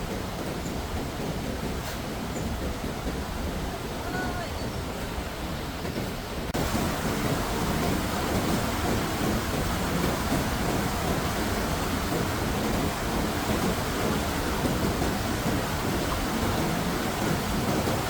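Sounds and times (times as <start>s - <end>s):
rushing water: 0.0s - 18.0s.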